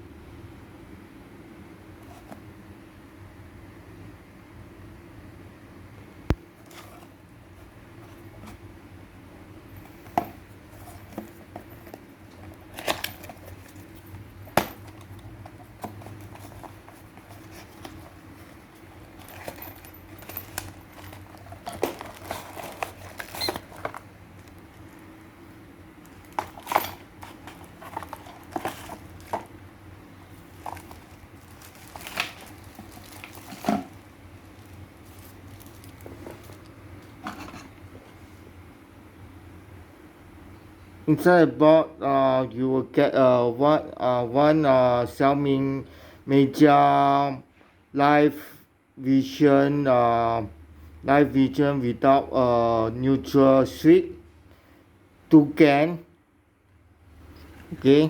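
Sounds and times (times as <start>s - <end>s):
packaging rustling and crinkling: 9.8s - 25.2s, 26.0s - 29.6s, 30.2s - 37.7s.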